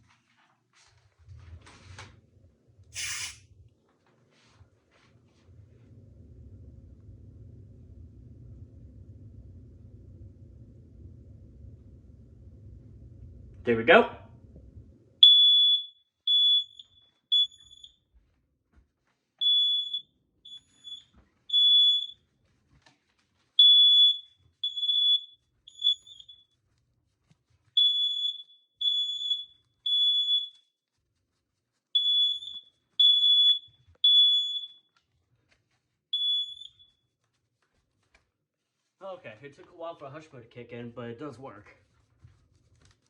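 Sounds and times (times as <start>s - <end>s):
smoke alarm beeping: 15.2s - 18.0s, 19.4s - 22.3s, 23.6s - 26.6s, 27.8s - 30.7s, 32.0s - 35.0s, 36.1s - 37.1s.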